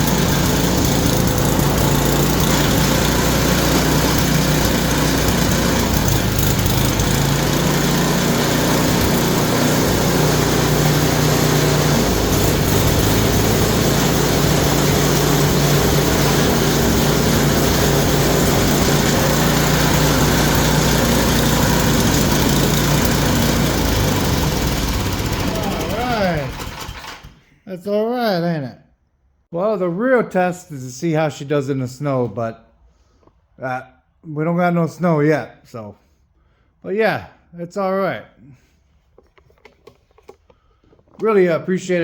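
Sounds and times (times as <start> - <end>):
snowblower engine running: 0.0 - 27.4.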